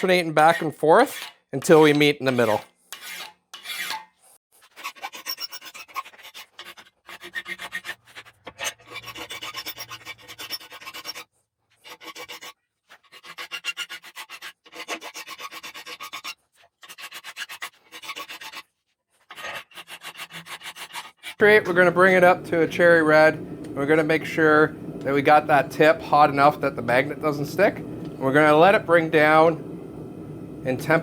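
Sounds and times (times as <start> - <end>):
hand file rasping on steel: 0.0 - 21.5.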